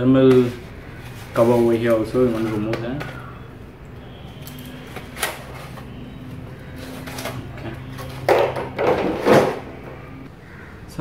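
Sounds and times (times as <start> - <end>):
cover scraping and rustling: 0.3 - 3.2, 4.6 - 10.2.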